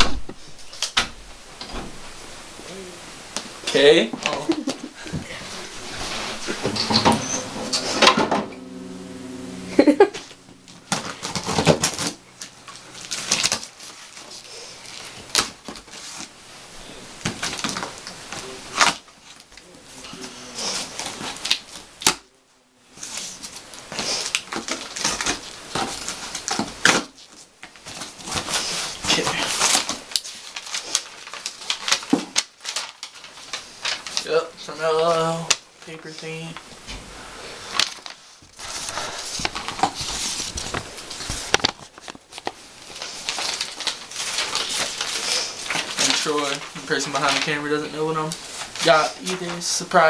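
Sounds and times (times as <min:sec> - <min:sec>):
clicks and knocks: 0:06.4 - 0:08.6
cardboard and paper rustling: 0:10.8 - 0:16.4, 0:17.2 - 0:22.2, 0:23.0 - 0:34.4, 0:36.4 - 0:50.0.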